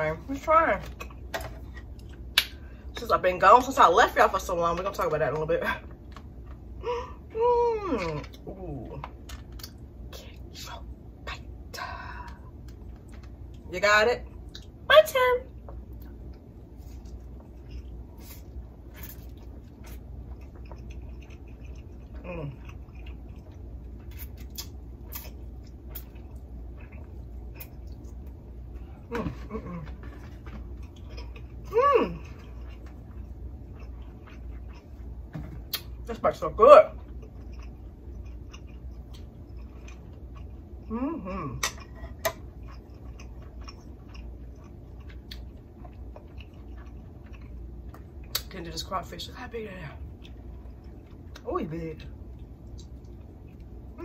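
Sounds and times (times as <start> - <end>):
chewing with lip smacks: 15.7 - 29.1, 29.8 - 36.1, 36.9 - 40.9, 41.6 - 48.6, 50.0 - 51.5, 52.3 - 54.0.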